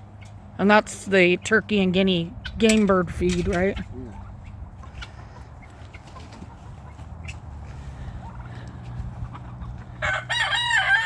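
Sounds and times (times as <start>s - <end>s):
rooster crowing: 10.0s - 11.0s.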